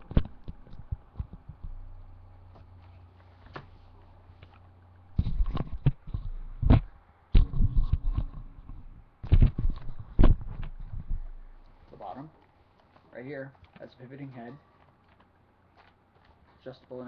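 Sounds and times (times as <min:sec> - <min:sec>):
faint steady hum: 0:00.0 - 0:17.0
vacuum handling thumps and clatter: 0:05.2 - 0:11.4.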